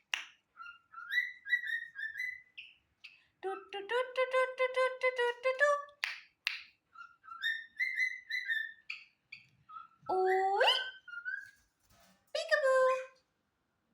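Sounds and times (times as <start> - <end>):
cockatiel whistling and chirping: 0.6 - 3.2, 6.9 - 11.6.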